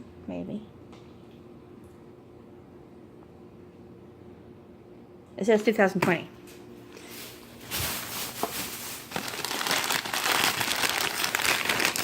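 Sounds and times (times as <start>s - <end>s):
plastic packaging crinkling: 6.8s - 12.0s.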